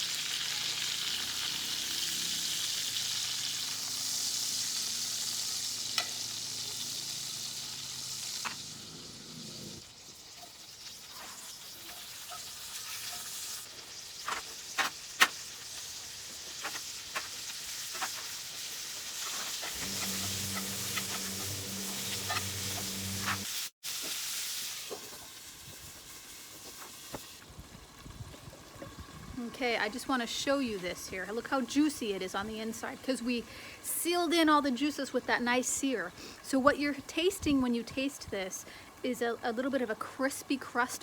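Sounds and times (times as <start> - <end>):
steaks sizzling in a pan: 0.0 - 27.5
utensils tapping a pan: 19.6 - 23.4
low steady hum: 19.8 - 23.5.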